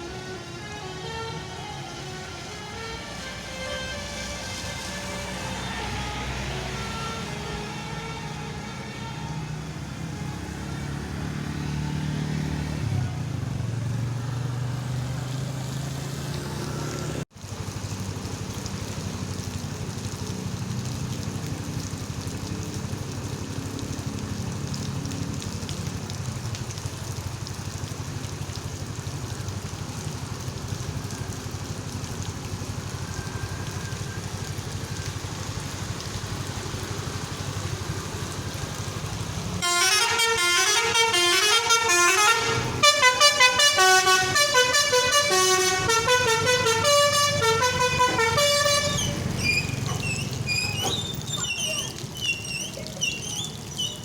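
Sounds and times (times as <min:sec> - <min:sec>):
multi-tone bus horn melody: 0:00.0 - 0:11.2, 0:39.6 - 0:51.0
bus engine running: 0:00.0 - 0:54.0
traffic noise: 0:00.0 - 0:54.0.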